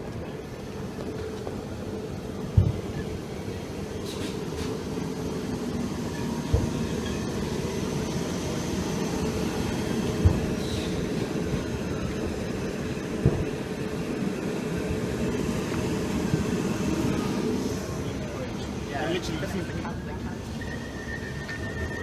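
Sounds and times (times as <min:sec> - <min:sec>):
train rumbling: 0:00.0 - 0:22.0
dull low thumps: 0:06.4 - 0:07.0.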